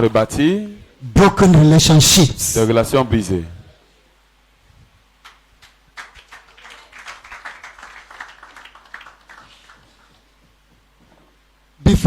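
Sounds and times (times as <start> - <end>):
congregation clapping: 5.2 - 10.4.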